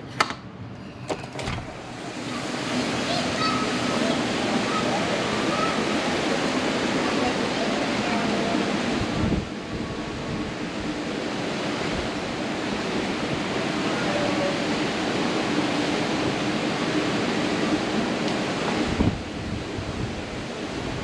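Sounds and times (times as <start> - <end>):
ocean surf: 1.4 - 21.0
wind on microphone: 8.2 - 14.9, 18.6 - 21.0.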